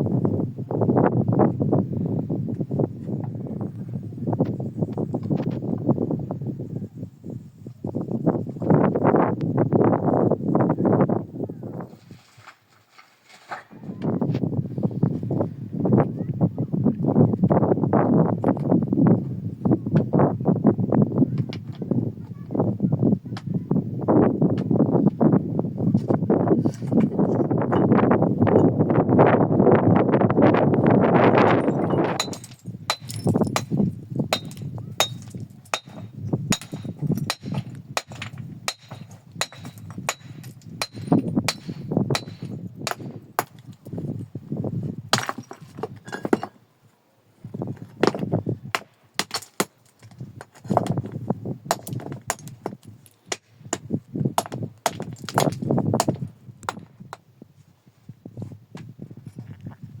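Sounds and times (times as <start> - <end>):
scraping and rustling: 11.9 - 13.9
rocks knocking and clinking: 31.4 - 44.3, 45.1 - 46.6, 47.8 - 57.2.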